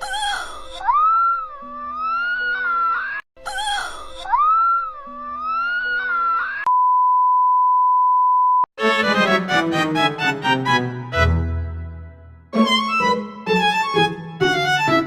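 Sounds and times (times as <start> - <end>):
bowed strings and piano music: 8.8 - 15.0.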